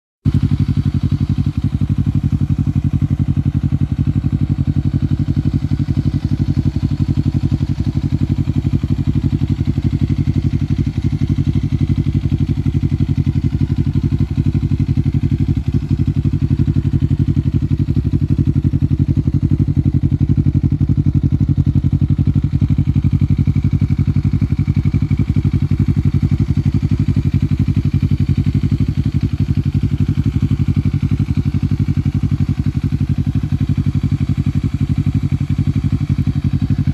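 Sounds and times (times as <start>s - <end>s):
motorcycle engine idling: 0.2s - 36.9s.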